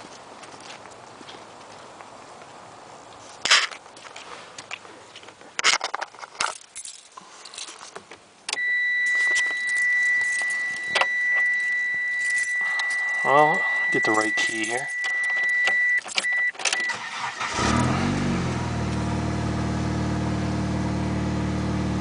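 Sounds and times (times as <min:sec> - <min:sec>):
car keys jangling: 0:05.6 - 0:08.0, 0:08.6 - 0:17.6
high-pitched electronic warning tone: 0:08.6 - 0:17.1.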